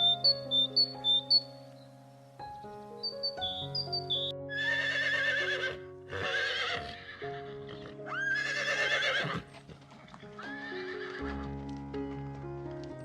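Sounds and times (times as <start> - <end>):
background music with held notes: 0.0 - 13.0
horse whinnying: 4.5 - 11.3.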